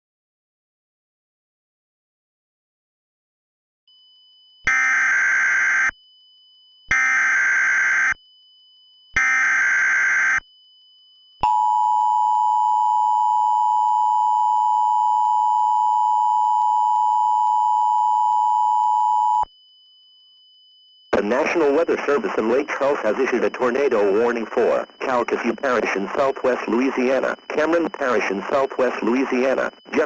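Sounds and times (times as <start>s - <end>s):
data screech bursts: 21.2s - 30.0s
steady attention tone: 21.2s - 30.0s.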